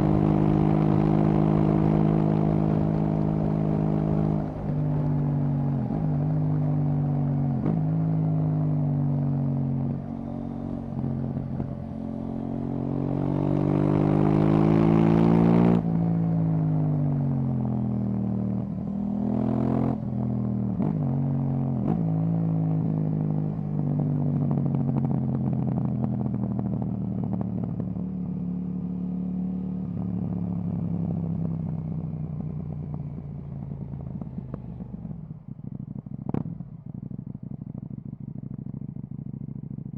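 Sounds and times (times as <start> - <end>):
motorcycle engine revving: 0.0 - 8.4, 9.0 - 15.9.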